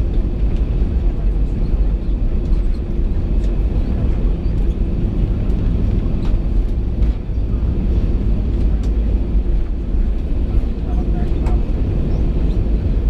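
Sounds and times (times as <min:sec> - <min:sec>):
airplane cabin engine rumble: 0:00.0 - 0:13.0.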